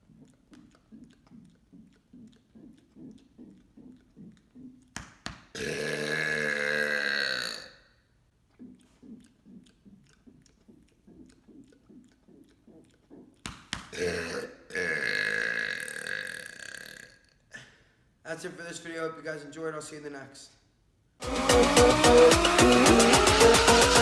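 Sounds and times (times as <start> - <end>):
faint repeated sounds: 0.0 - 7.0, 7.8 - 14.6
man burping: 5.6 - 7.9, 13.9 - 17.8.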